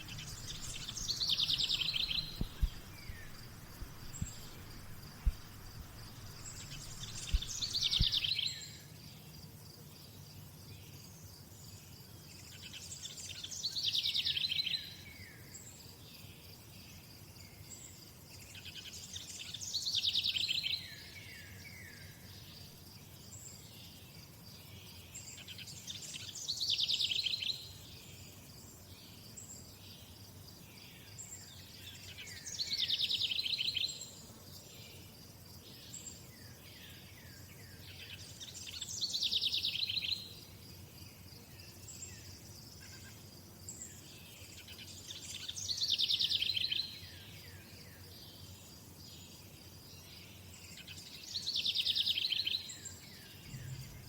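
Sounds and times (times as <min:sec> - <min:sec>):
songbird trilling: 0:00.0 - 0:08.4
high insect hum: 0:00.0 - 0:54.0.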